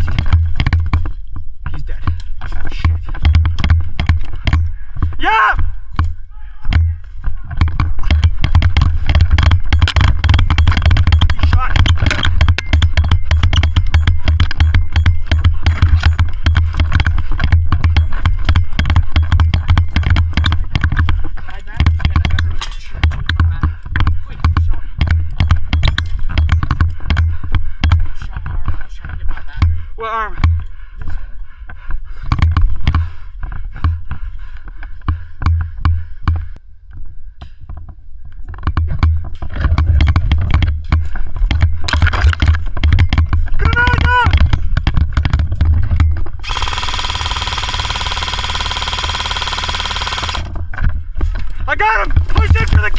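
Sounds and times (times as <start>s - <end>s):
bumping and rumbling of movement: 0.0s - 52.9s
airsoft guns firing: 46.4s - 50.6s.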